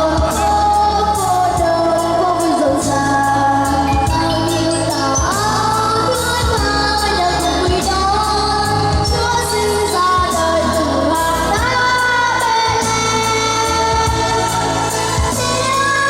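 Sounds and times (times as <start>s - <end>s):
backing music with beat and bass: 0.0s - 16.0s
person singing: 0.0s - 16.0s.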